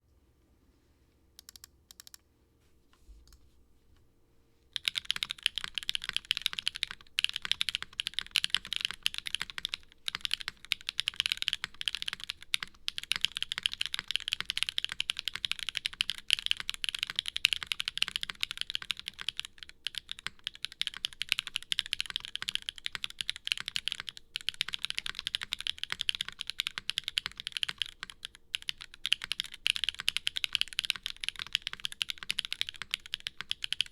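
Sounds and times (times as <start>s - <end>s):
mechanical keyboard typing: 1.4s - 2.2s, 4.8s - 33.9s.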